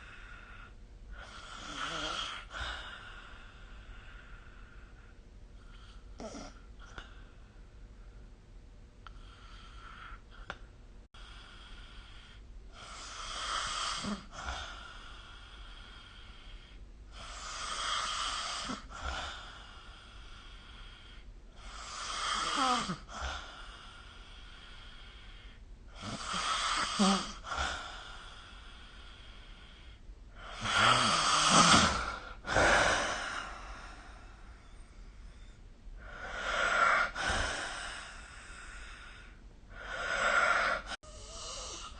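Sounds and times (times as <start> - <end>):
quiet breathing: 0.0 - 41.9
person snoring: 1.2 - 3.6, 11.5 - 16.5, 17.1 - 29.8, 30.4 - 41.9.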